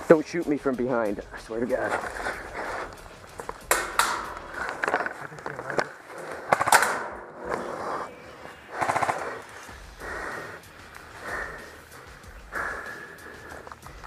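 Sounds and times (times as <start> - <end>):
airsoft guns firing bursts: 6.4 - 7.2, 8.7 - 9.6.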